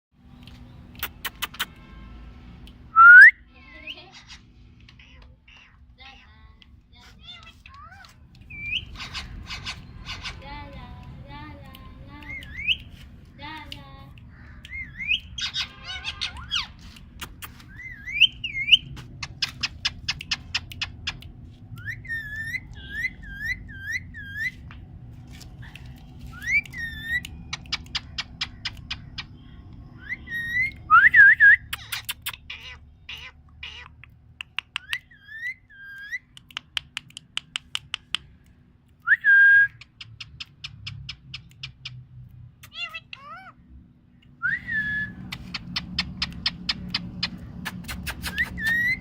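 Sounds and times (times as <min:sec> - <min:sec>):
parrot whistling: 0:03.0 - 0:03.4, 0:48.0 - 0:49.0
parrot clicking: 0:06.6 - 0:15.7, 0:16.3 - 0:22.7, 0:25.6 - 0:29.3, 0:31.7 - 0:39.0, 0:39.7 - 0:43.2, 0:45.2 - 0:49.0
parrot squawks: 0:14.4 - 0:16.8, 0:42.6 - 0:43.6, 0:48.0 - 0:49.0.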